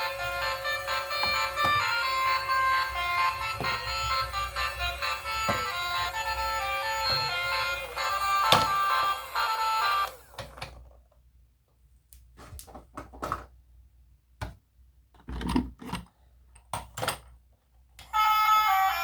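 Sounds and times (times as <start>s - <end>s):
background music: 0.0s - 10.2s.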